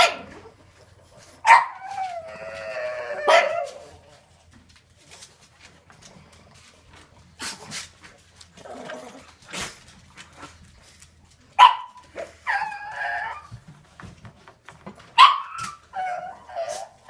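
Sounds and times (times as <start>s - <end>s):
dog wavering cry: 1.4s - 3.9s, 12.2s - 13.5s, 15.2s - 17.0s.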